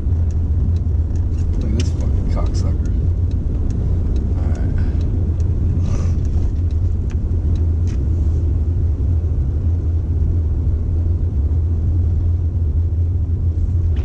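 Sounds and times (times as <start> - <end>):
car driving on snowy road: 0.0 - 14.0.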